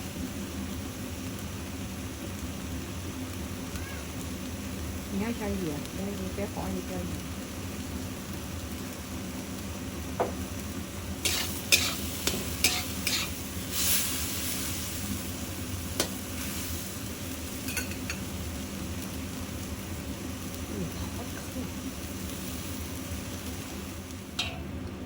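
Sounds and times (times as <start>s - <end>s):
food sizzling: 0.0s - 25.0s
short hiss: 11.2s - 15.0s
spatula scraping a pan: 11.2s - 15.1s.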